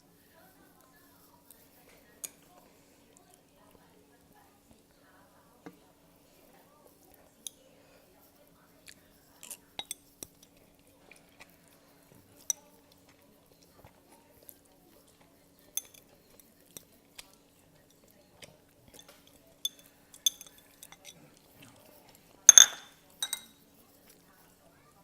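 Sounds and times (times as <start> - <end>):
utensils clinking against bowl: 9.3 - 14.0, 15.1 - 24.2.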